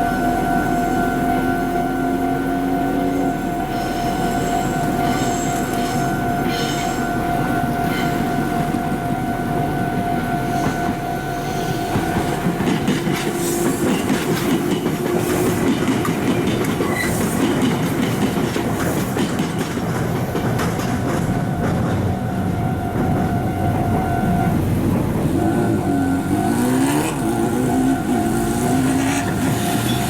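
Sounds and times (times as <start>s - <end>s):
train wheels clattering over rail joints: 11.6s - 22.2s.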